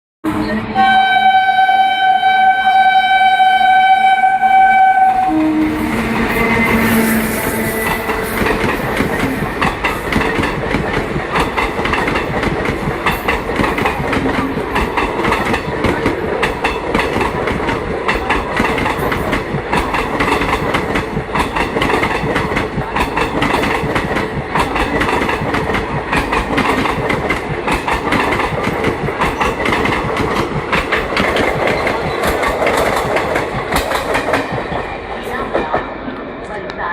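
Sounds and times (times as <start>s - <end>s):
train wheels clattering over rail joints: 7.8s - 35.8s.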